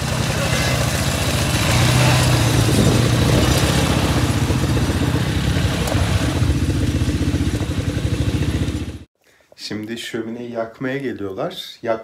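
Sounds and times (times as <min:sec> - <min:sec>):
quad bike engine running: 0:00.0 - 0:09.1.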